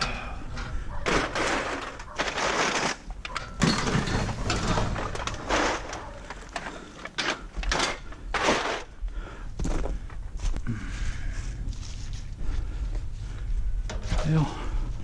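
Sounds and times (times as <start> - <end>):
scrap metal scraping and rattling: 0.0 - 9.0.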